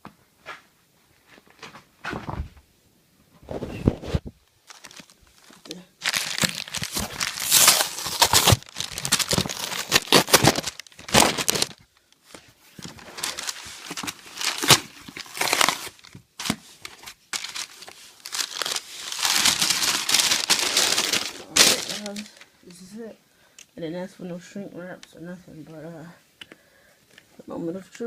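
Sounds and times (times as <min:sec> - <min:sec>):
packaging crinkling and ripping: 0:04.0 - 0:22.5.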